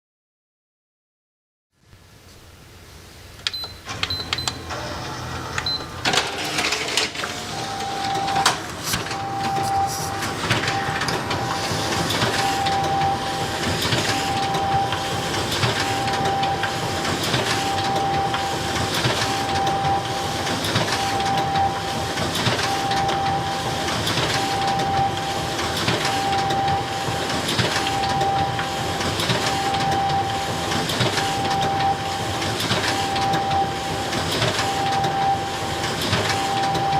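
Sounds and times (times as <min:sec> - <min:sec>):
photocopier whirring: 0:03.4 - 0:36.9
short high beeps: 0:09.2 - 0:13.3.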